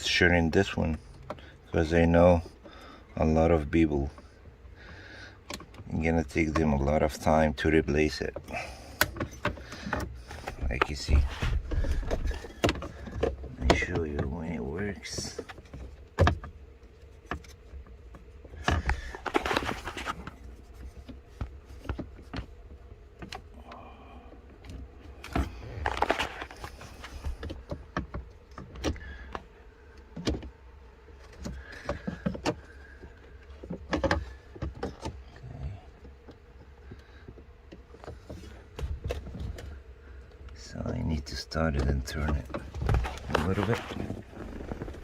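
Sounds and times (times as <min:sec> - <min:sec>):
plastic parts clicking and rattling: 0:08.1 - 0:23.5, 0:24.5 - 0:30.6
rustling: 0:16.7 - 0:23.5, 0:24.9 - 0:28.4, 0:42.4 - 0:45.0.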